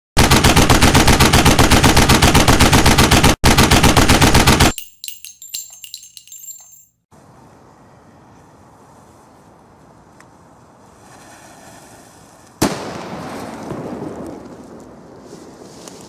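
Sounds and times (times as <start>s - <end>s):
firework crackles and pops: 12.4s - 16.0s
firework bangs: 12.6s - 15.8s.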